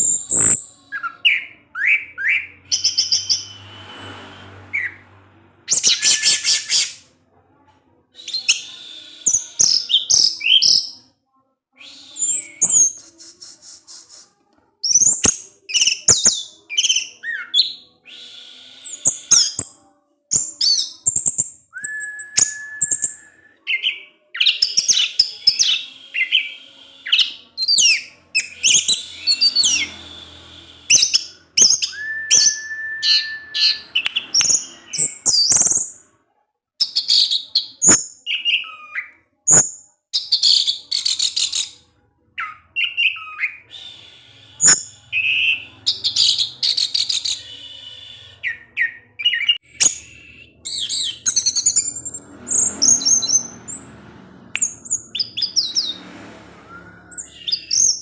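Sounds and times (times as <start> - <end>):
thrush singing whistled phrases: 0.0 - 7.1, 8.2 - 11.0, 11.8 - 14.2, 14.8 - 35.9, 36.8 - 58.0
long level bird whistles: 11.8 - 13.3, 20.5 - 35.8, 42.4 - 53.9, 54.6 - 58.0.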